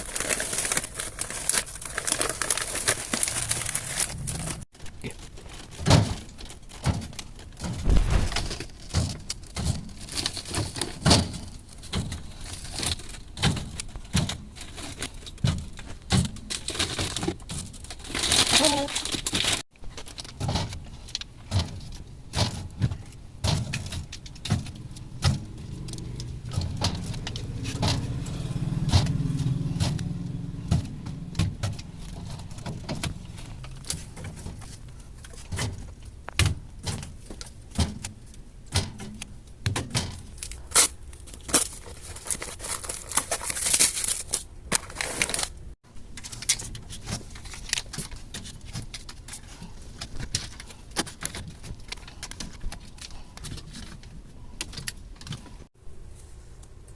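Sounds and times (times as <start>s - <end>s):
low rumble: 7.8s - 8.6s.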